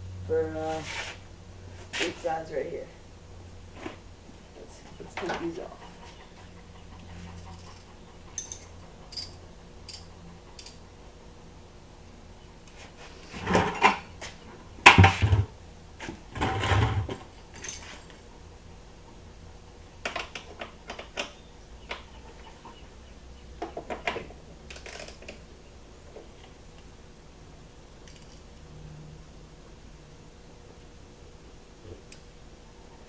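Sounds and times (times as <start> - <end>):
metallic clatter of bolts: 7.6 - 10.8, 24.7 - 25.4, 28.0 - 28.4.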